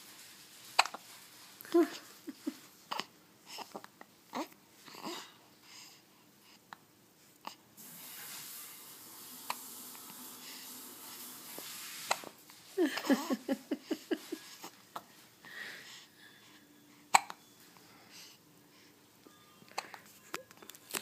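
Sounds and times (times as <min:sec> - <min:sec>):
baby hiccuping: 0:17.1 - 0:17.4.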